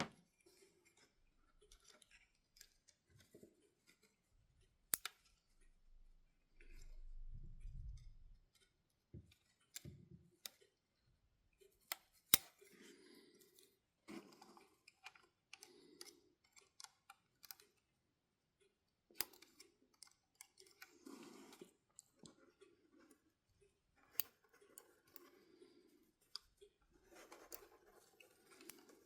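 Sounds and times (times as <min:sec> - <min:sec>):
plastic parts clicking and scraping: 0:00.0 - 0:05.7, 0:11.6 - 0:18.0, 0:19.1 - 0:29.0.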